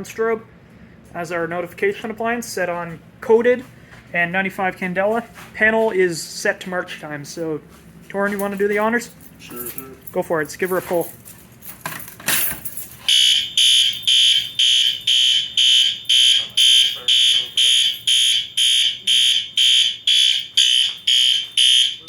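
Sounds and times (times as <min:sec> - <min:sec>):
fire alarm pull station clack: 0:12.3 - 0:22.0
shrill pulsing alarm horn: 0:13.1 - 0:22.0.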